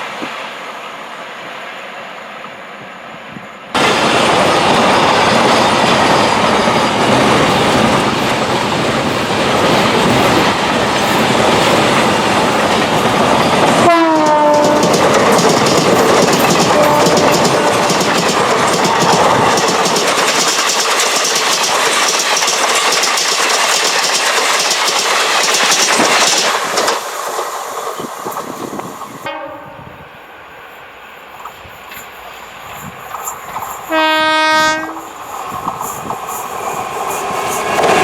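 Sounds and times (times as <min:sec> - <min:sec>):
train wheels clattering: 0:03.8 - 0:29.3, 0:31.3 - 0:38.0
locomotive horn blast: 0:13.8 - 0:14.9, 0:16.6 - 0:17.9, 0:29.2 - 0:30.0, 0:33.9 - 0:35.1.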